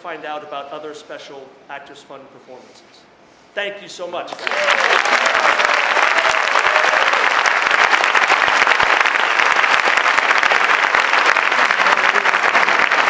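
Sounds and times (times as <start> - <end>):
audience applauding: 4.3 - 13.0.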